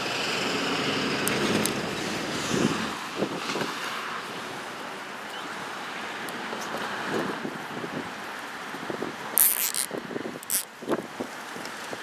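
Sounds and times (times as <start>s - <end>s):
wind rushing on microphone: 1.1s - 4.8s, 6.4s - 12.0s.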